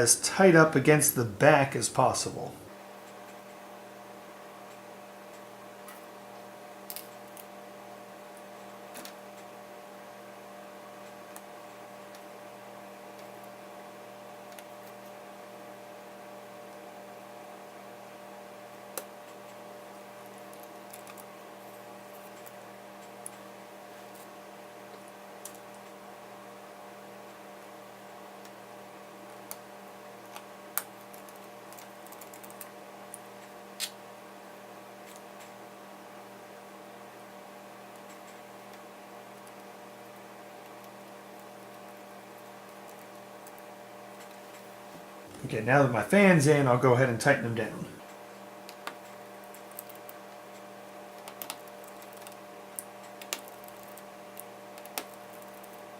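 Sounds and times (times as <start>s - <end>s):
electrical hum: 0.0s - 55.9s
small clicks and taps of parts: 48.7s - 55.8s.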